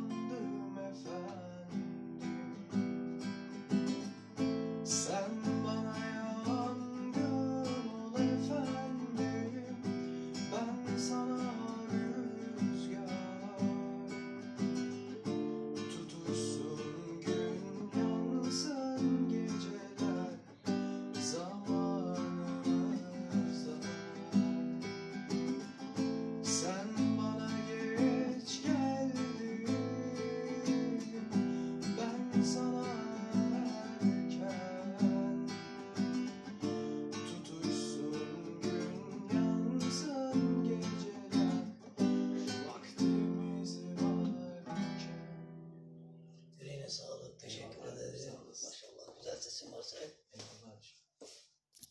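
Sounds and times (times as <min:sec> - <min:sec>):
young man singing: 0:00.0 - 0:02.0, 0:04.8 - 0:14.4, 0:15.7 - 0:24.8, 0:26.4 - 0:45.2
strummed acoustic guitar: 0:00.0 - 0:46.6.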